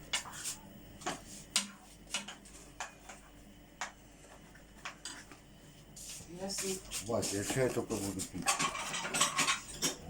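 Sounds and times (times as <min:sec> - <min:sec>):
crockery and cutlery clinking: 0:08.4 - 0:10.0.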